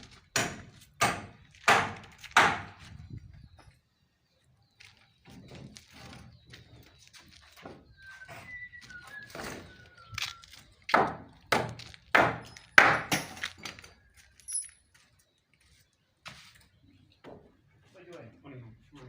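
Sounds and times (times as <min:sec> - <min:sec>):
hammer striking timber: 0:00.3 - 0:02.8, 0:10.9 - 0:13.4.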